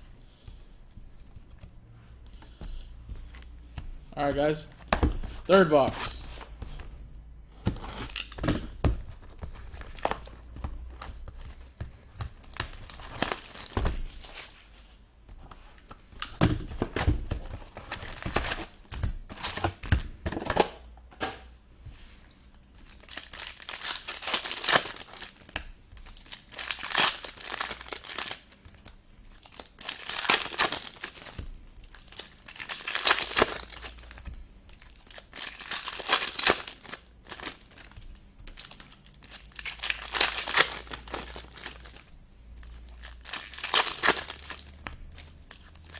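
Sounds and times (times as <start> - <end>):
wrappers ripped open crinkly: 22.9 - 28.5, 29.3 - 34.2, 34.8 - 42.0, 42.7 - 45.9
cardboard and wrap tearing: 23.0 - 25.5, 26.1 - 28.4, 29.4 - 34.2, 35.0 - 37.9, 42.9 - 44.7.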